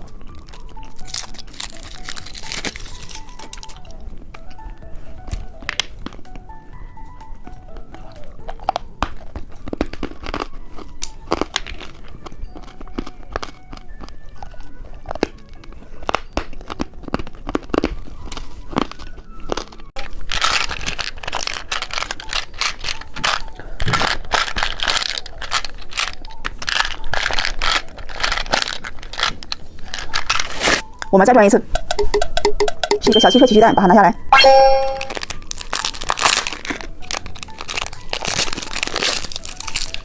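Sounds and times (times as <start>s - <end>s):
plastic snack packaging crinkling: 0.0s - 4.5s, 7.8s - 31.1s, 35.2s - 40.0s
sharp clicks and taps: 31.8s - 33.8s.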